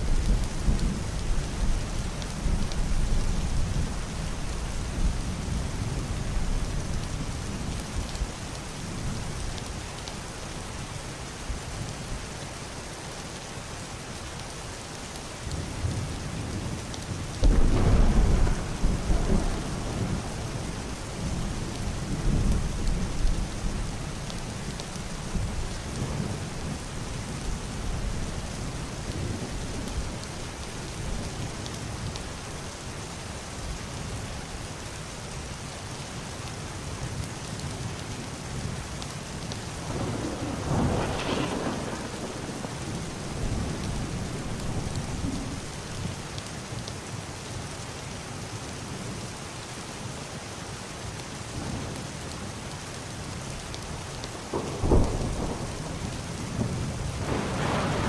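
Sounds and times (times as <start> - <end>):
heavy rain on roof and window: 0.0 - 58.0
muffled thunder rumbling: 15.8 - 31.4, 39.8 - 46.2, 54.4 - 58.0
sharp thunder crack: 17.4 - 20.4, 39.9 - 45.4, 56.6 - 58.0.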